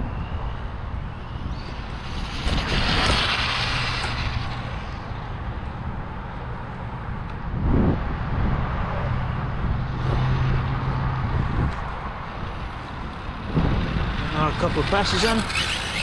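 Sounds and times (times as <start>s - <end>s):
wind noise on microphone: 0.0s - 16.0s
rc car speeding past: 1.2s - 5.5s, 12.4s - 16.0s.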